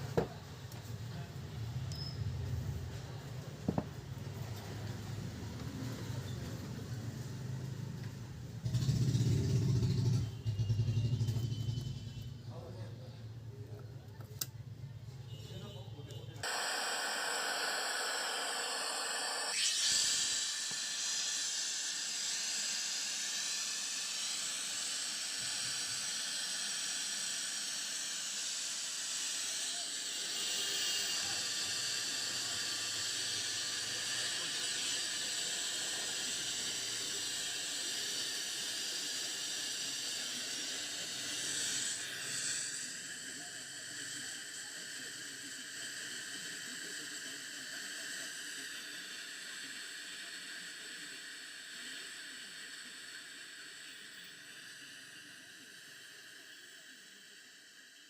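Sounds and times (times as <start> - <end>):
faint high-pitched whistling: 0.6 - 3.2, 8.8 - 13.7, 15.3 - 57.7
steady hiss: 16.4 - 58.0.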